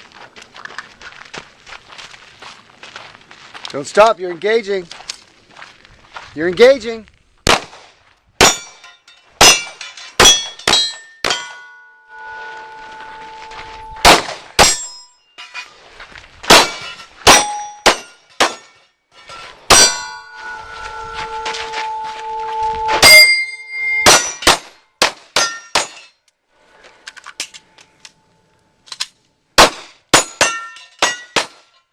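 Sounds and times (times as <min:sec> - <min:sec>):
pistol shots: 0:07.4 - 0:08.8, 0:09.4 - 0:11.6, 0:14.0 - 0:14.9, 0:16.5 - 0:18.7, 0:24.1 - 0:26.0, 0:29.6 - 0:31.6
steel plate ringing: 0:08.4 - 0:15.7, 0:16.6 - 0:24.6, 0:25.4 - 0:26.2, 0:30.2 - 0:31.5
bullets clanging off steel targets: 0:08.4 - 0:15.8, 0:16.4 - 0:20.6, 0:21.2 - 0:26.3, 0:28.9 - 0:31.9.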